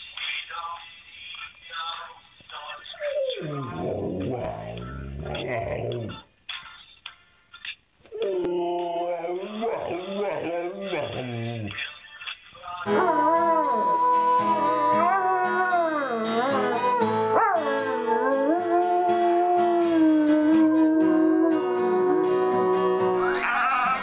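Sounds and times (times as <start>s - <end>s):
music: 0.0s - 24.0s
dog howling: 8.1s - 11.7s, 12.9s - 23.4s.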